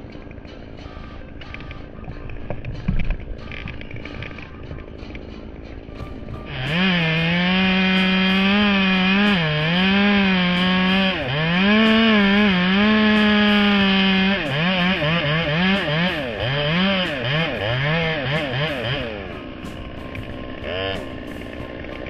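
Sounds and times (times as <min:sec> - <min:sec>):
chainsaw cutting wood: 0:06.0 - 0:22.0.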